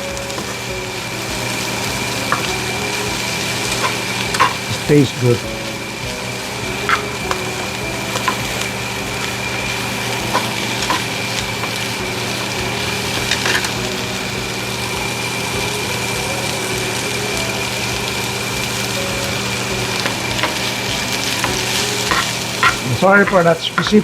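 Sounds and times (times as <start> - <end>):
onions sizzling in a pan: 0.0 - 24.0
steady hum: 0.0 - 24.0.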